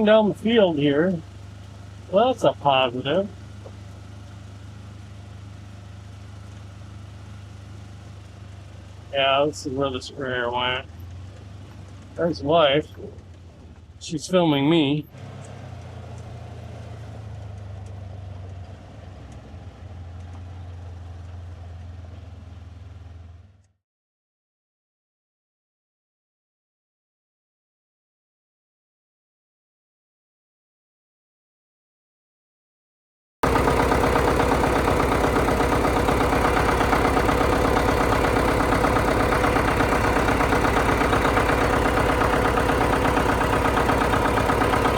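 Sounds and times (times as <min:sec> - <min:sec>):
vehicle engine droning: 0:00.0 - 0:23.6, 0:33.4 - 0:44.9.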